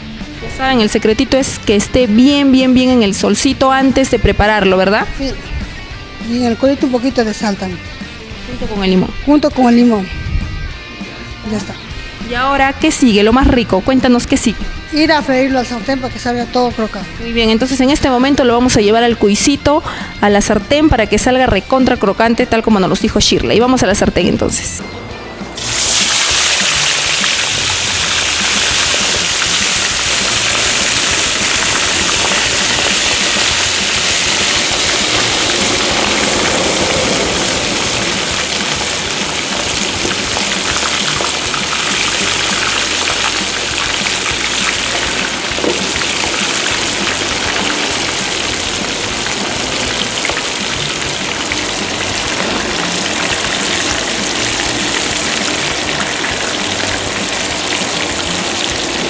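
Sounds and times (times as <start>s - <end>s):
meat sizzling in hot oil: 25.6s - 59.0s.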